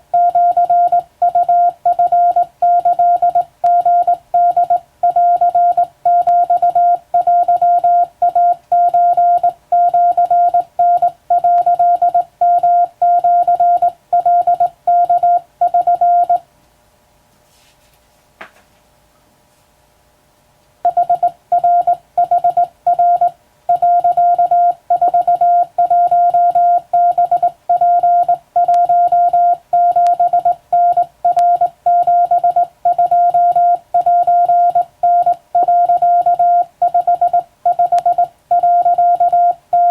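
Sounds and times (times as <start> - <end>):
morse code tone: 0.1 - 16.4, 20.9 - 39.9.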